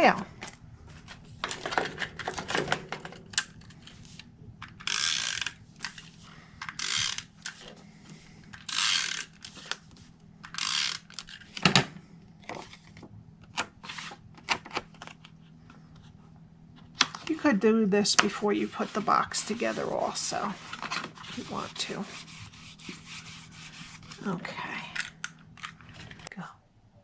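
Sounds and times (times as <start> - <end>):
tape roller ratcheting on paper: 3.4 - 7.7, 8.5 - 11.6.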